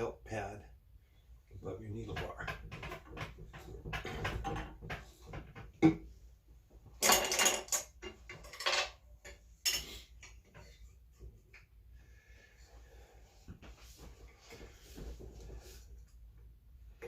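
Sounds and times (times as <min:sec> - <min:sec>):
metal clinks and clatter: 0:07.0 - 0:09.0.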